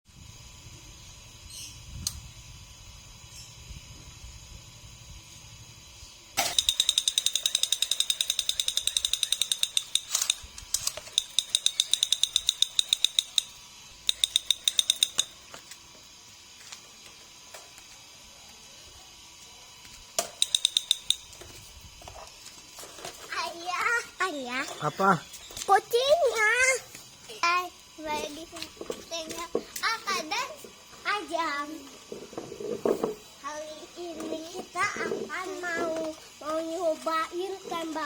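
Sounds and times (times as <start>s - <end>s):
rapid mechanical clicking: 6.4s - 15.5s, 20.2s - 21.5s.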